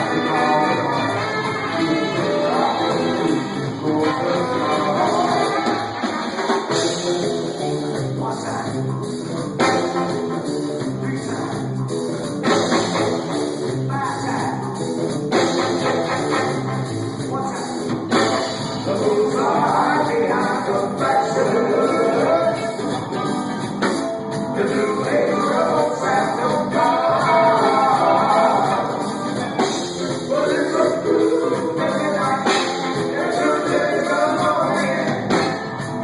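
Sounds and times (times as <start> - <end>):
person singing: 0.0 - 5.9, 18.6 - 22.9, 24.6 - 35.4
drum kit: 0.0 - 36.0
electric guitar: 0.0 - 36.0.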